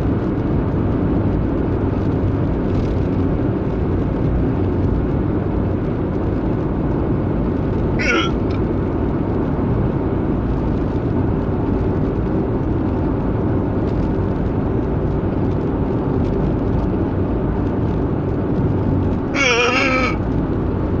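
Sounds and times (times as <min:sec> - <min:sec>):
car cabin engine and road rumble: 0:00.0 - 0:21.0
brief wavering voiced sound: 0:19.4 - 0:20.2.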